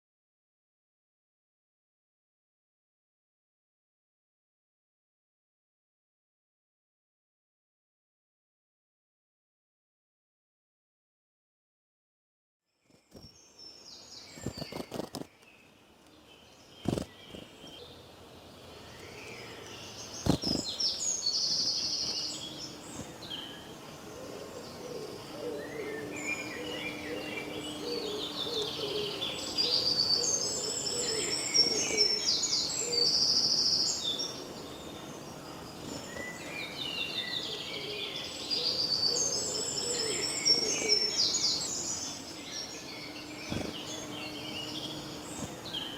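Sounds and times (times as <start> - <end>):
small birds chirping and trilling: 12.8 - 45.9.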